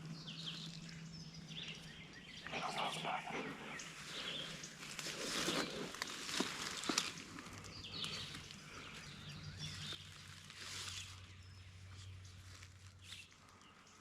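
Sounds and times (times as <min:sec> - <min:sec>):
songbirds chirping: 0:00.0 - 0:14.0
rustling: 0:03.8 - 0:08.9, 0:09.7 - 0:13.9.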